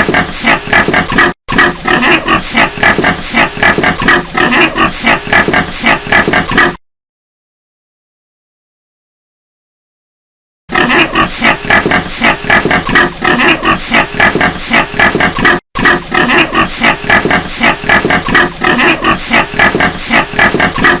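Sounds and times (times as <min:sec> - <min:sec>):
pigs grunting and squealing: 0:00.0 - 0:06.8, 0:10.7 - 0:21.0.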